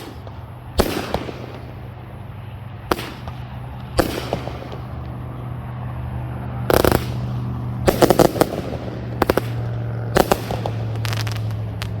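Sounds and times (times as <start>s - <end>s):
firework bangs: 0.0s - 5.7s, 6.6s - 12.0s.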